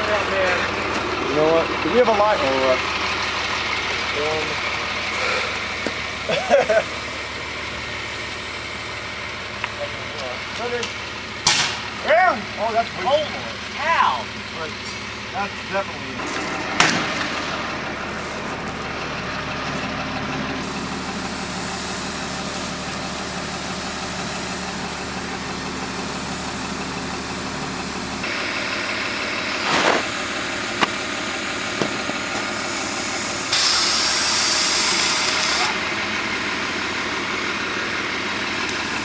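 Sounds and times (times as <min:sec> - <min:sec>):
diesel engine idling: 0:00.0 - 0:39.0
hissing air burst: 0:20.6 - 0:28.1, 0:32.5 - 0:35.8.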